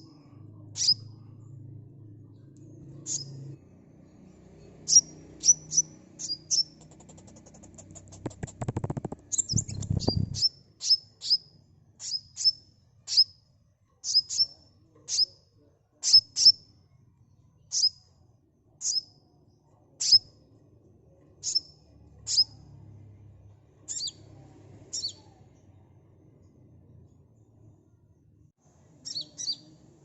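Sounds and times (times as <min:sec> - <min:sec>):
bird chirping: 0:00.0 - 0:01.4, 0:02.3 - 0:15.4, 0:16.0 - 0:16.7, 0:17.6 - 0:18.2, 0:18.8 - 0:19.2, 0:21.4 - 0:22.8, 0:23.8 - 0:25.8, 0:29.0 - 0:29.8
bird rattling trill: 0:04.9 - 0:11.0.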